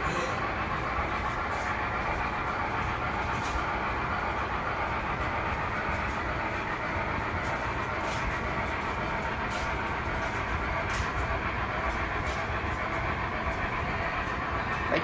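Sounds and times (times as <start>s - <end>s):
model train whirring on rails: 0.0s - 15.0s.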